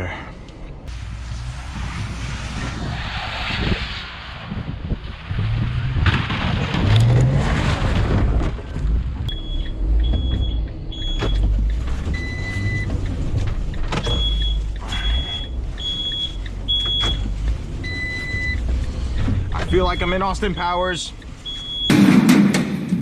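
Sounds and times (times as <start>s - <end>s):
van engine revving: 4.6s - 22.3s
high electronic warning beeps: 14.0s - 18.6s, 19.5s - 22.0s.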